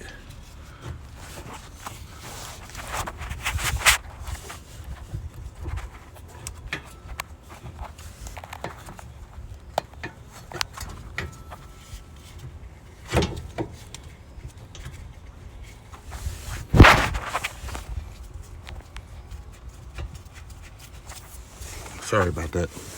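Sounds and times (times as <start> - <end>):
loud knocks: 16.7 - 17.4.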